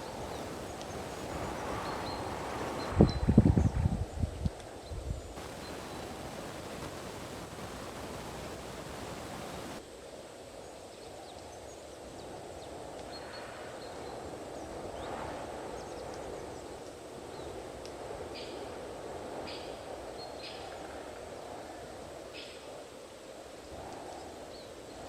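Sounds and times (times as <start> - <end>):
strong wind blowing: 0.0 - 9.8.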